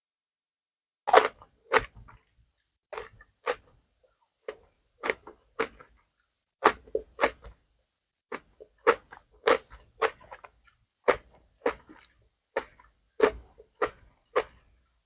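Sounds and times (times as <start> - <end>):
wet crunchy chewing: 1.1 - 2.2, 2.9 - 3.8, 4.5 - 6.0, 6.6 - 7.6, 8.3 - 14.7.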